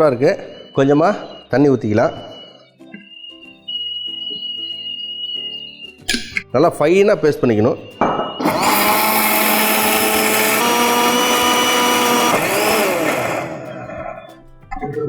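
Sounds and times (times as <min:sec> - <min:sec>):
mixer grinder running: 0:08.4 - 0:14.1.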